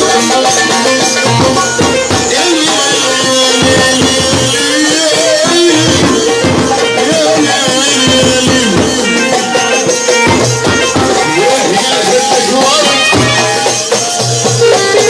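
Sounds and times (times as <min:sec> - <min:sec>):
drum and percussion strokes: 0:00.0 - 0:15.0
pitch-bending melody: 0:00.0 - 0:15.0.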